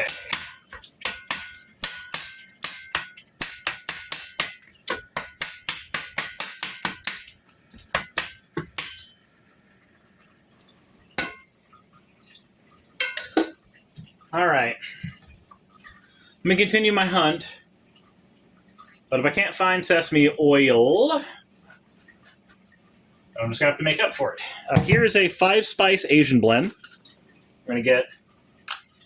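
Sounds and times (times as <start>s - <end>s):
utensil knocking against bowl: 0.0s - 9.0s.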